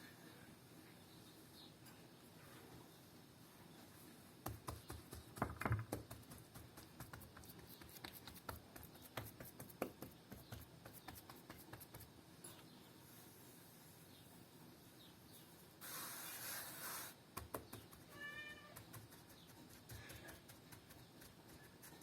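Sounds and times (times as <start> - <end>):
hands patting dough: 4.4 - 12.1, 17.3 - 22.0.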